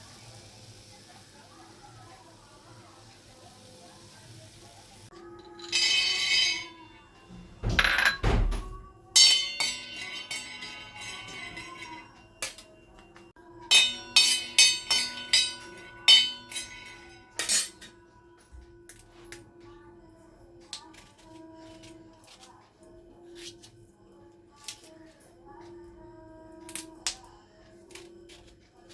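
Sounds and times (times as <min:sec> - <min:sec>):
kitchen utensils clinking: 0:05.1 - 0:18.1.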